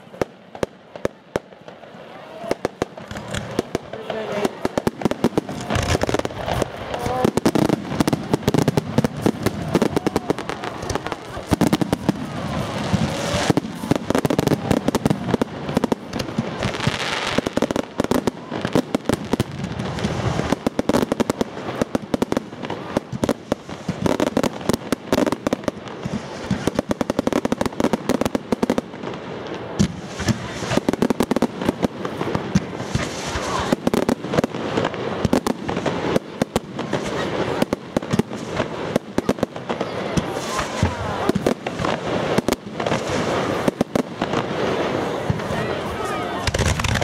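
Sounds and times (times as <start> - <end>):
fireworks bangs and crackles: 0.0 - 47.0.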